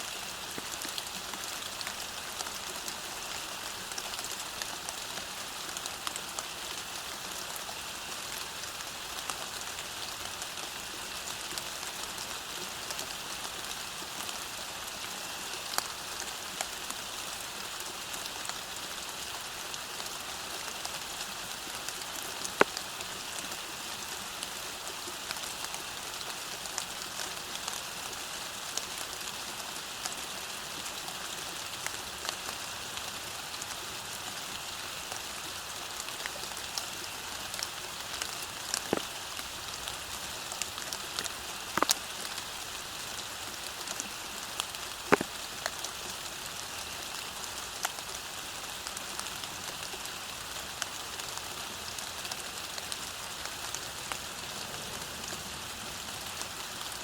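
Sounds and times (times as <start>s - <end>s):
steady rain falling: 0.0s - 57.0s
raindrop ticks: 21.8s - 22.9s, 36.0s - 42.6s, 43.7s - 48.1s.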